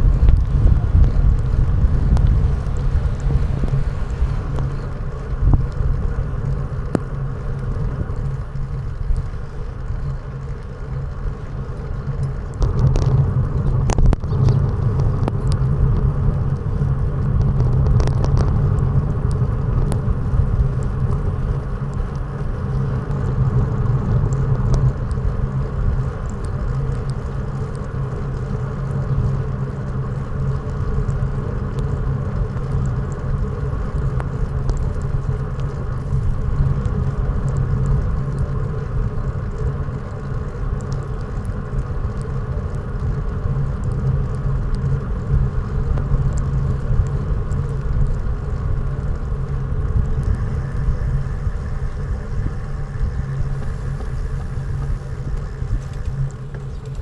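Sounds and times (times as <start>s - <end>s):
motorcycle engine cruising: 0.0s - 9.0s, 48.3s - 57.0s
wind and road noise: 0.0s - 57.0s.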